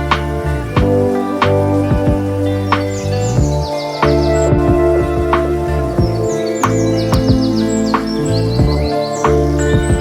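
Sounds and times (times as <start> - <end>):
birds chirping: 0.0 - 10.0
calm instrumental music: 0.0 - 10.0.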